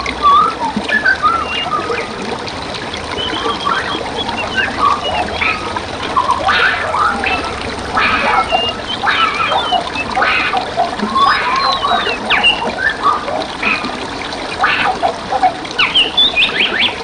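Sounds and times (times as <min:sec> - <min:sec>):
harsh bird calls: 0:00.0 - 0:17.0
running water: 0:00.0 - 0:17.0
whistled bird chirps: 0:00.1 - 0:02.3, 0:03.0 - 0:13.9, 0:15.8 - 0:17.0.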